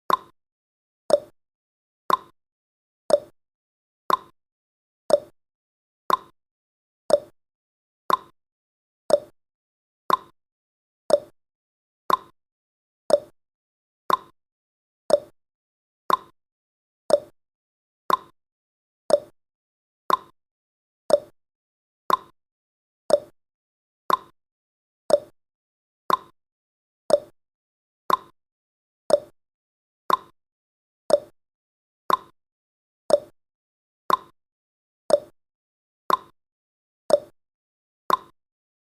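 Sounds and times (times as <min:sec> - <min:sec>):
clock ticking: 0:00.1 - 0:00.3, 0:02.1 - 0:02.3, 0:04.1 - 0:04.3, 0:06.1 - 0:06.3, 0:08.1 - 0:08.3, 0:10.1 - 0:10.3, 0:12.1 - 0:12.3, 0:14.1 - 0:14.3, 0:16.1 - 0:16.3, 0:17.1 - 0:17.3, 0:18.1 - 0:18.3, 0:20.1 - 0:20.3, 0:22.1 - 0:22.3, 0:24.1 - 0:24.3, 0:26.1 - 0:26.3, 0:28.1 - 0:28.3, 0:30.1 - 0:30.3, 0:31.1 - 0:31.3, 0:32.1 - 0:32.3, 0:33.1 - 0:33.4, 0:34.1 - 0:34.3, 0:35.1 - 0:35.4, 0:36.1 - 0:36.4, 0:37.1 - 0:37.4, 0:38.1 - 0:38.4.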